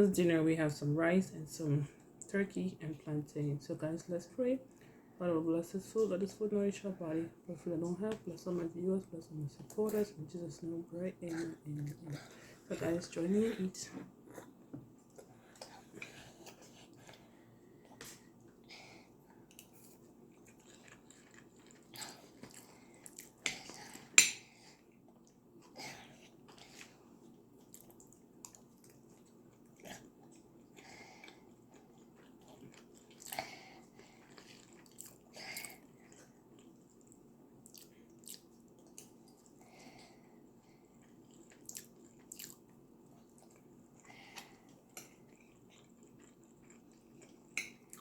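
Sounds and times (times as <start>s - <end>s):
faint low hum: 0.0s - 48.0s
chewing and crunching food: 13.8s - 48.0s.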